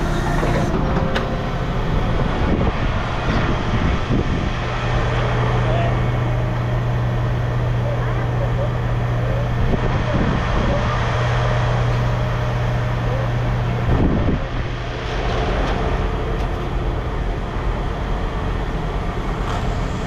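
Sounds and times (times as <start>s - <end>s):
strong low hum: 0.0s - 7.9s
heavy machinery running: 0.0s - 9.8s, 11.0s - 20.0s.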